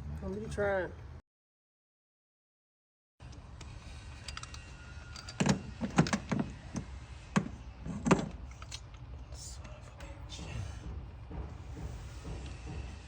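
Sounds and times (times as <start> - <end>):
hand tools and parts clicking: 3.2 - 9.8.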